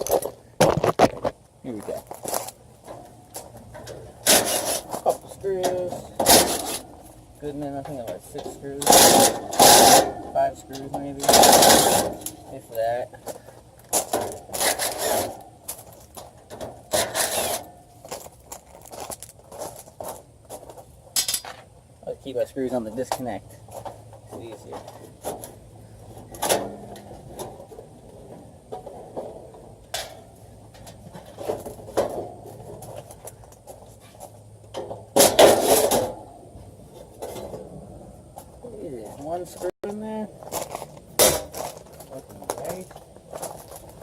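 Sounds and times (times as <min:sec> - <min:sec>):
tools scraping sheet metal: 0:03.8 - 0:07.0, 0:08.4 - 0:12.4, 0:14.0 - 0:15.4, 0:16.5 - 0:17.8, 0:35.1 - 0:36.2
clicks of screws and metal panels: 0:21.2 - 0:21.7.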